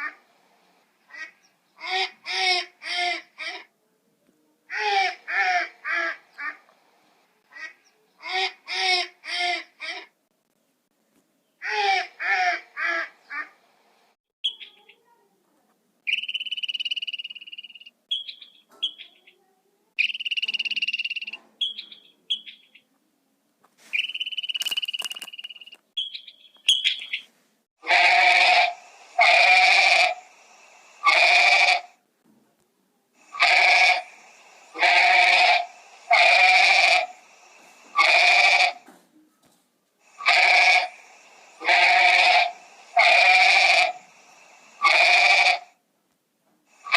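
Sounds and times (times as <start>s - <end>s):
short high chirping: 20.0s - 22.7s, 23.8s - 27.3s
loud pitched animal calls: 27.8s - 31.9s, 33.2s - 37.3s, 37.9s - 38.8s, 40.1s - 45.7s.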